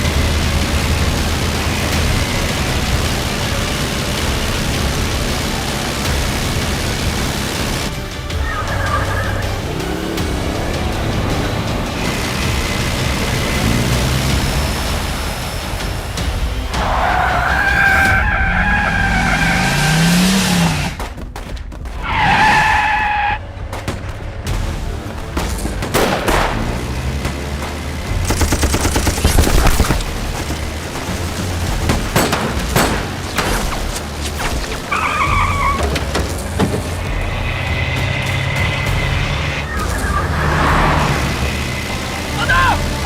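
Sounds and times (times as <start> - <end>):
rapid gunfire: 0.0 - 8.0, 23.8 - 35.0
low engine rumble: 0.0 - 21.2
tires squealing: 0.0 - 21.2, 21.8 - 43.0.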